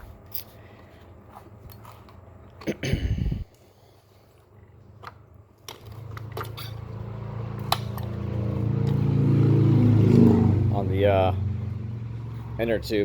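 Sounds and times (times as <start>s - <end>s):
low engine hum: 5.8s - 13.0s.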